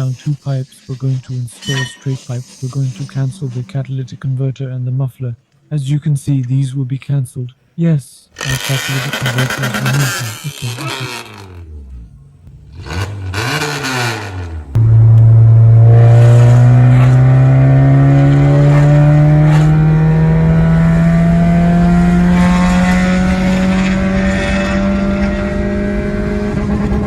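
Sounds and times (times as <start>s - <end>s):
car engine revving loudly: 8.4s - 27.0s.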